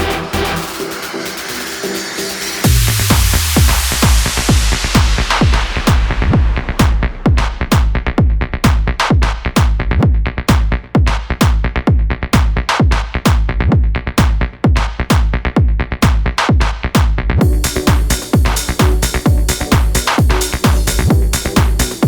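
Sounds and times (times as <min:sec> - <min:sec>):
high synth noise wash: 0:00.0 - 0:10.0, 0:17.4 - 0:22.0
electronic dance music: 0:00.0 - 0:11.7, 0:14.2 - 0:22.0
pounding kick-drum beat: 0:00.0 - 0:22.0.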